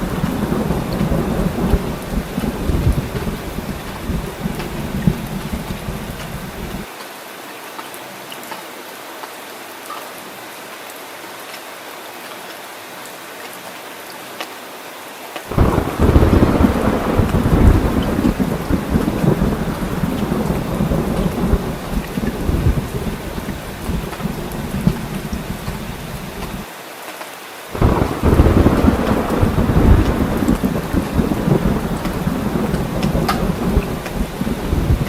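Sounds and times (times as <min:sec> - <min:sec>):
deep rumble of thunder: 0:00.0 - 0:06.9, 0:15.5 - 0:26.6, 0:27.8 - 0:35.0
heavy rain hissing: 0:00.0 - 0:35.0.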